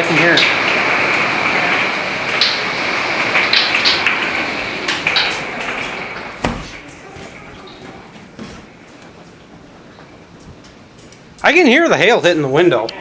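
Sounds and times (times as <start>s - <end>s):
hail ticking on window glass: 0.0s - 8.7s
heavy rain: 0.0s - 8.9s
wind: 0.0s - 13.0s.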